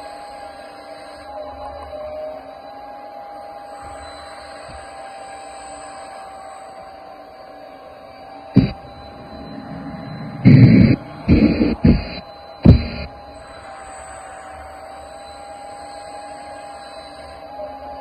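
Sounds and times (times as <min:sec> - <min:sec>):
hydraulic pump whine: 0:07.8 - 0:18.0.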